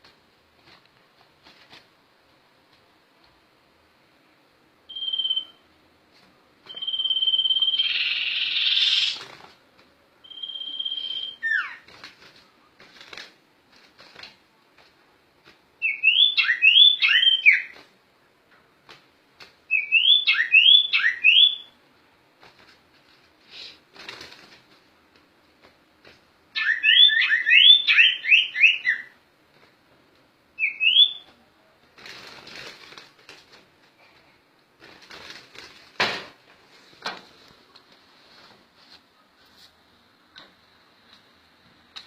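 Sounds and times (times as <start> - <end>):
songbird whistling song: 4.9 - 5.6, 6.7 - 9.2, 10.2 - 11.8, 15.8 - 17.8, 19.7 - 21.8, 26.6 - 29.2, 30.6 - 31.3.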